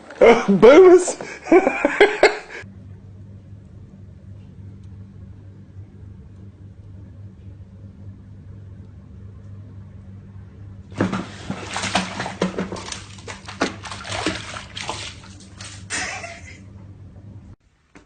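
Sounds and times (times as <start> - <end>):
water splashing and sloshing: 10.9 - 16.6.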